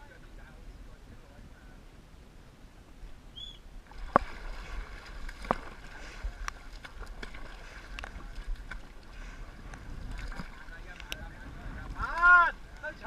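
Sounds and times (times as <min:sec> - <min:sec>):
paddles splashing water: 0:03.8 - 0:13.0.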